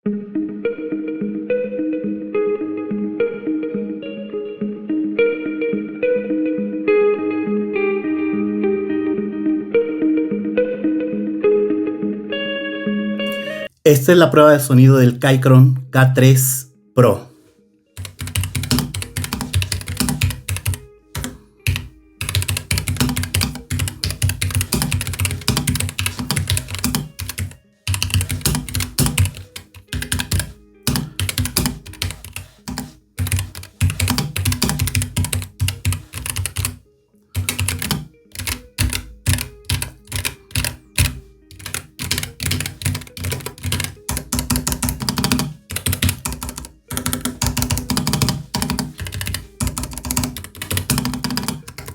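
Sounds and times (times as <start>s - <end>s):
mechanical keyboard typing: 18.0s - 36.8s, 37.4s - 51.9s.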